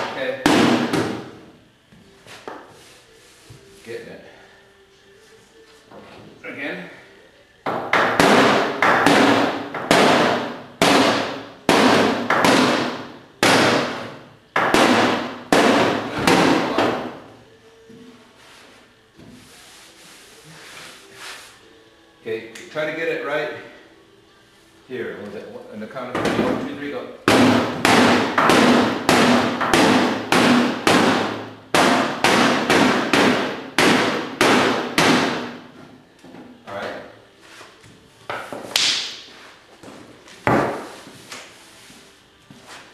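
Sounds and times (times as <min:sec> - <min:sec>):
hammer pounding metal: 0:00.0 - 0:01.4, 0:07.7 - 0:17.2, 0:27.2 - 0:35.7.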